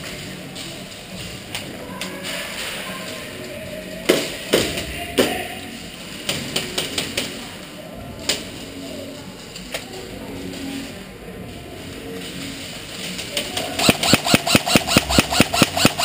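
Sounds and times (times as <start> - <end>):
airsoft gun firing: 13.8 - 16.0.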